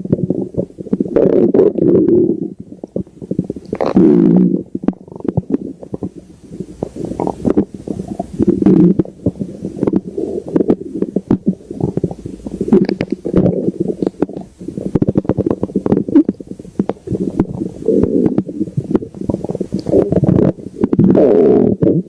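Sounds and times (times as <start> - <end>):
stomach growling: 0.0 - 22.0.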